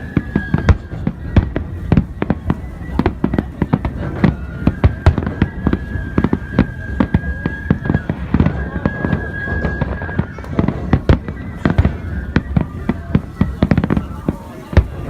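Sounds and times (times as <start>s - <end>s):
fireworks bangs: 0.0s - 15.0s.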